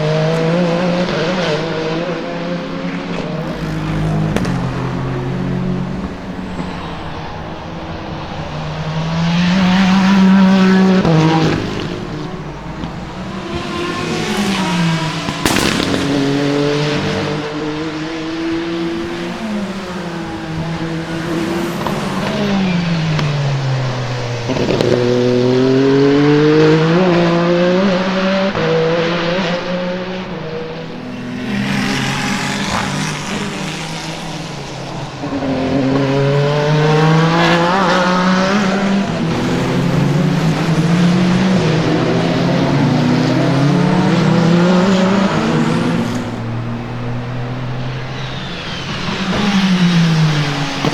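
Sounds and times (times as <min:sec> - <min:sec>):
race car engines passing: 0:00.0 - 0:50.9
sharp crack: 0:02.9 - 0:25.0.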